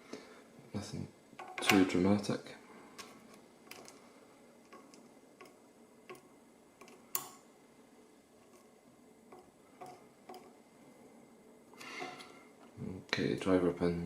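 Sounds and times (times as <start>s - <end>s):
small metal parts clicking: 1.4s - 1.9s, 3.7s - 4.0s.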